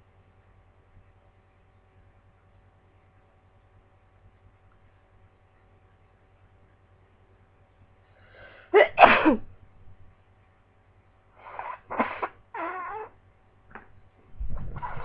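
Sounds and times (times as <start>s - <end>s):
person sneezing: 8.7s - 9.5s, 11.4s - 13.1s.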